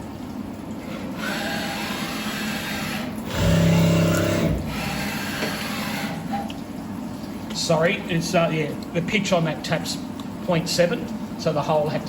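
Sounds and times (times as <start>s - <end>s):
spindle motor hum: 0.0s - 9.0s
milling machine running: 0.8s - 6.4s.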